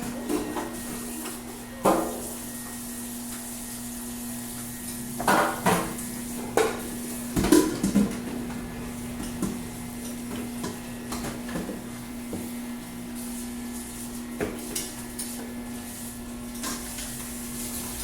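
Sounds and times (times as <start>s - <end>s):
pots and dishes clattering: 5.2s - 12.5s.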